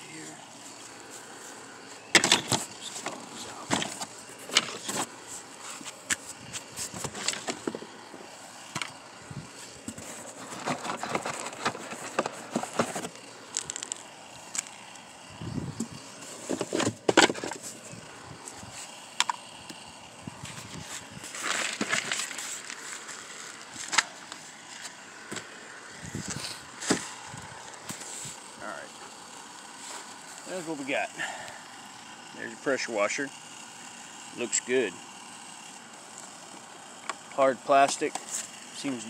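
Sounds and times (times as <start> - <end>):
packaging rustling and scraping: 0.6 - 8.2, 8.8 - 14.8, 16.2 - 17.9, 20.4 - 28.4.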